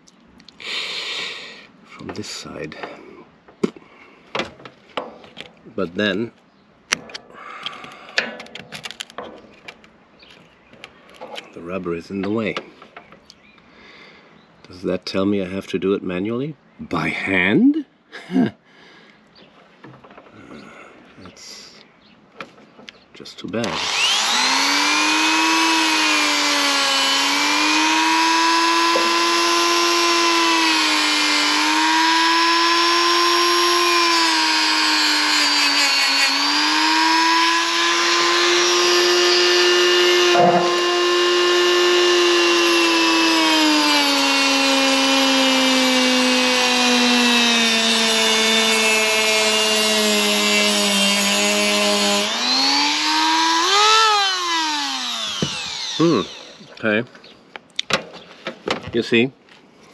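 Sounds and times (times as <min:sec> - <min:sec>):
rotary tool grinding rust: 0:23.7 - 0:56.7.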